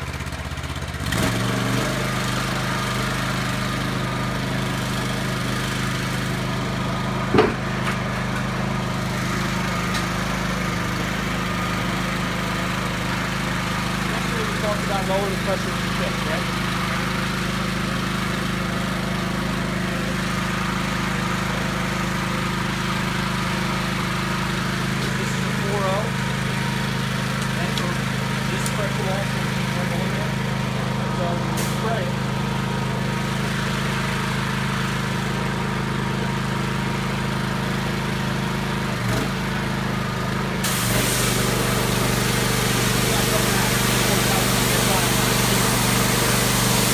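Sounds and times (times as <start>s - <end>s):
pressure washer engine running: 0.0s - 46.9s
water spray hissing: 31.4s - 32.1s, 40.6s - 46.9s.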